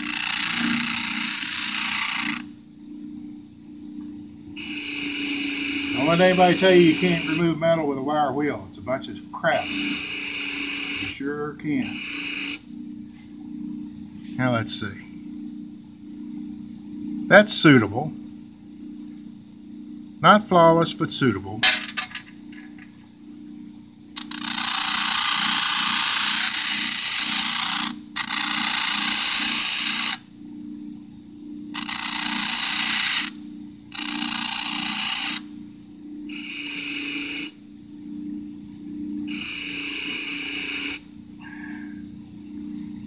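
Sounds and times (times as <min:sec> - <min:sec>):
metal grinding on wire wheel: 0:00.0 - 0:02.4
wire wheel motor hum: 0:00.0 - 0:43.0.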